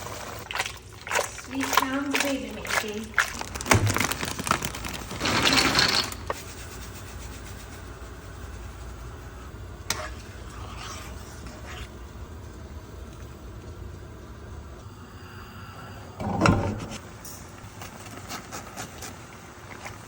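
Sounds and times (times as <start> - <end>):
steady low hum: 6.2 - 18.3.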